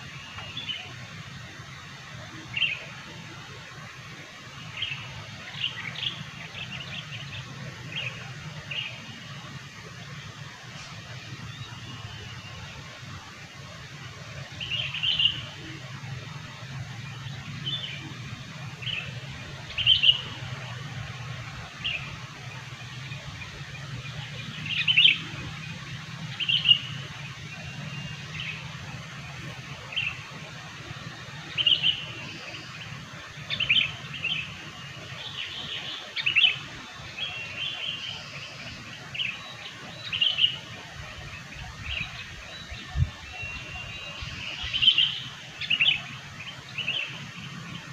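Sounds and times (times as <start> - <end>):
bird chirping: 2.4 - 3.0, 14.5 - 30.4, 31.1 - 47.9.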